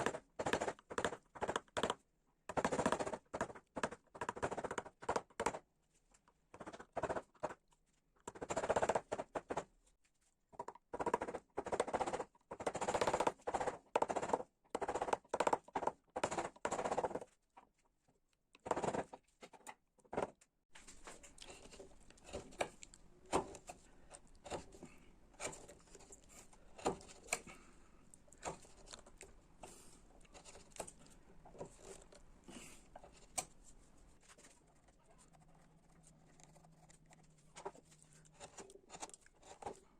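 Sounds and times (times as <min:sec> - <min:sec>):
carving tools scraping wood: 0:10.5 - 0:17.2, 0:21.0 - 0:27.7, 0:28.3 - 0:39.9.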